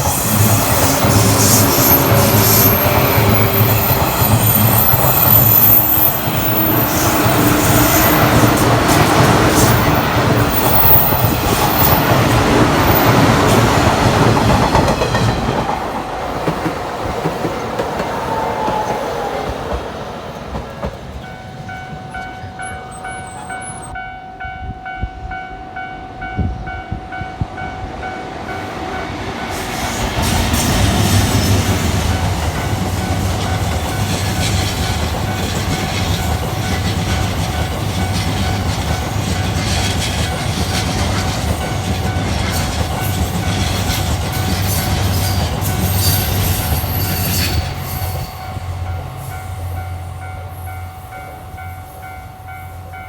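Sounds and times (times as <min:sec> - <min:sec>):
crossing warning bell ringing: 0:00.0 - 0:16.1, 0:21.0 - 0:29.7, 0:32.1 - 0:53.0
train wheels on rails: 0:00.0 - 0:53.0.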